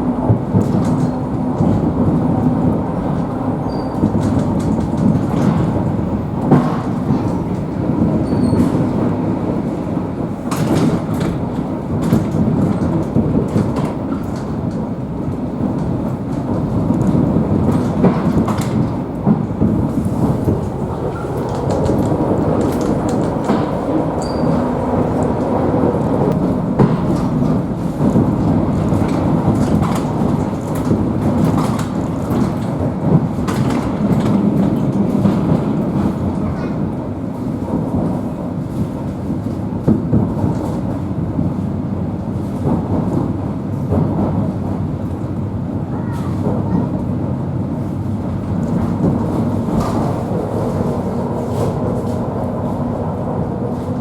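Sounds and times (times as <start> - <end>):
train rumbling inside carriage: 0.0 - 54.0
wheels knocking and rattling: 0.2 - 41.6.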